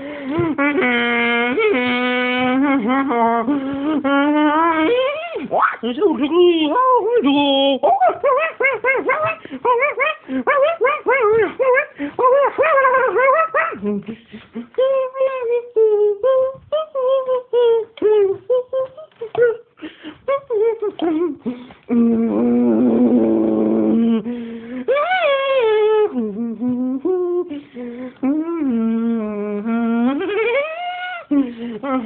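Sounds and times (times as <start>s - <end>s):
puppy whining and howling: 6.7s - 14.0s, 24.9s - 26.2s, 30.2s - 31.3s.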